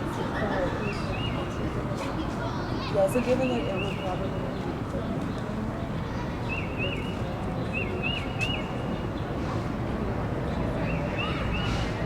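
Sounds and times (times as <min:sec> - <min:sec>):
town traffic rumble: 0:00.0 - 0:12.0.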